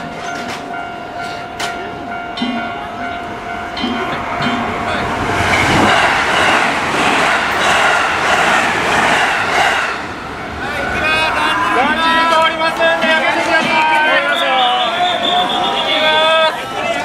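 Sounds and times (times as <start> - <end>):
crossing bell ringing tone: 0.0 - 6.3
train rushing past: 0.0 - 17.0.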